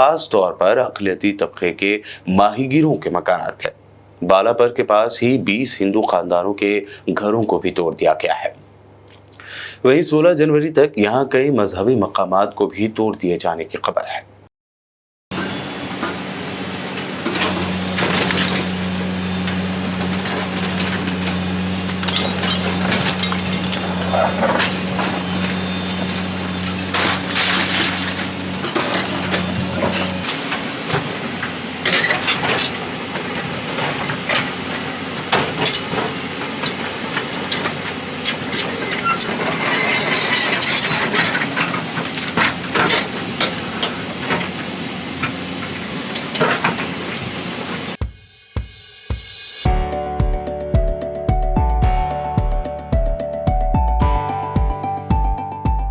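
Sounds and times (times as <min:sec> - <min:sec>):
machinery engine drone: 0:15.3 - 0:47.9.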